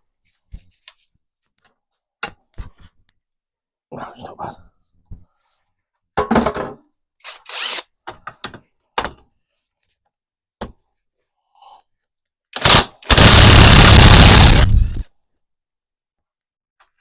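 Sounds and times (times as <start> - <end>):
power tool running: 12.6 - 15.0.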